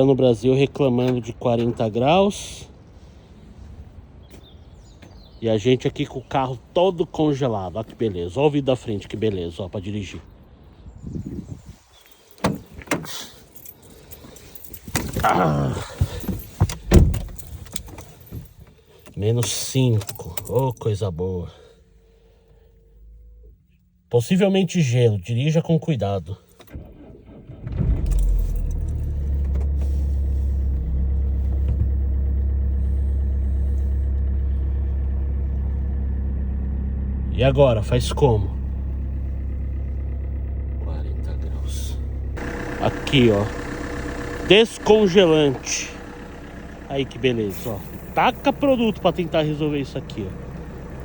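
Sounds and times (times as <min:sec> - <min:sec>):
car keys jangling: 0:11.8 - 0:21.0, 0:26.4 - 0:27.2, 0:28.0 - 0:32.0, 0:47.2 - 0:51.0
heavy low thump: 0:31.4 - 0:32.3.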